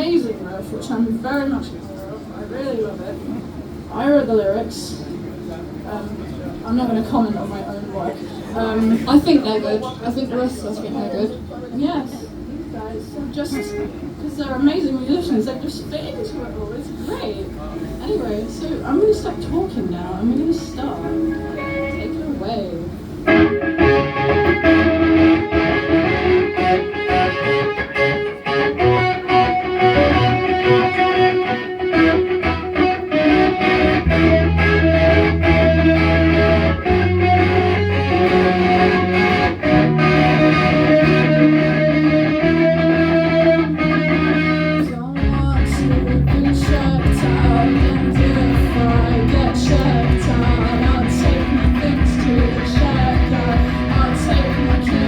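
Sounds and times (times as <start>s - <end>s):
guitar riff: 13.5s - 14.2s, 20.6s - 55.0s
bass notes: 23.3s - 55.0s
rock band playing: 23.3s - 55.0s
drums: 45.2s - 55.0s.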